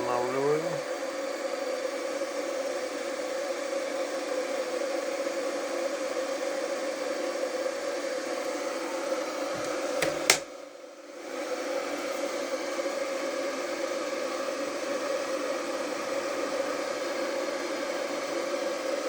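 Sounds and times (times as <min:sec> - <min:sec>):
electric kettle heating water: 0:00.0 - 0:19.0
kettle switch click: 0:09.6 - 0:10.5.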